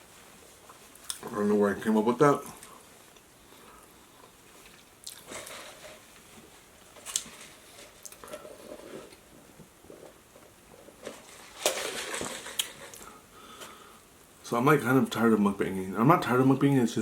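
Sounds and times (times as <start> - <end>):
person chewing food: 3.1 - 5.5.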